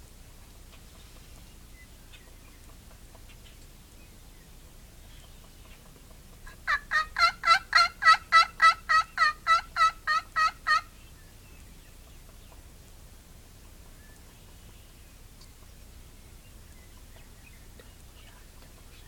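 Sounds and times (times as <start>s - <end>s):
turkey yelping: 6.4s - 10.9s.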